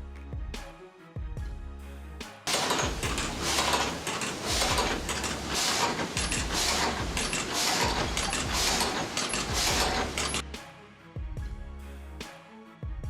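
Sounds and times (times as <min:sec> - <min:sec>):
sawmill machinery rasping: 0:02.5 - 0:10.4.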